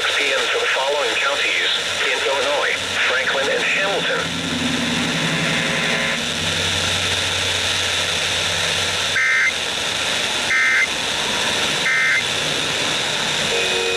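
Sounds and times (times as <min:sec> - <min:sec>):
radio static hiss: 0:00.0 - 0:04.6, 0:05.2 - 0:13.9
warbling two-tone data bursts: 0:09.1 - 0:09.6, 0:10.4 - 0:10.9, 0:11.8 - 0:12.3.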